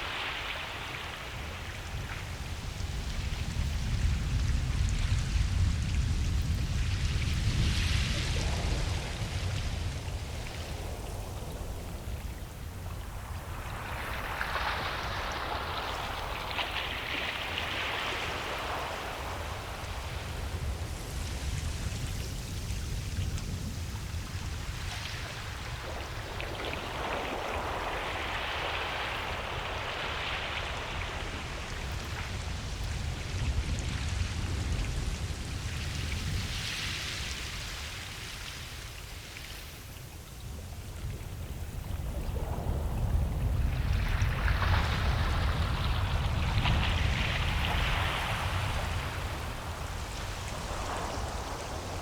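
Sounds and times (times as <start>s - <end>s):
hiss of wave wash: 7.0s - 52.0s
low surf rumble: 39.9s - 52.0s.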